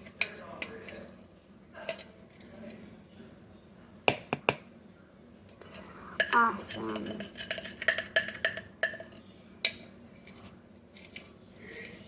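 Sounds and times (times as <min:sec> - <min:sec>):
utensil clinking against bowl: 0:05.6 - 0:12.0.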